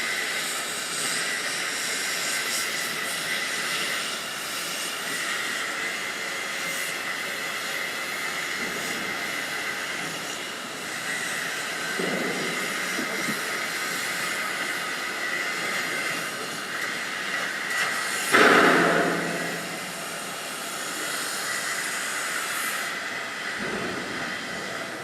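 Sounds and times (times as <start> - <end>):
mechanical hiss: 7.5 - 24.9
high whine: 18.3 - 21.6.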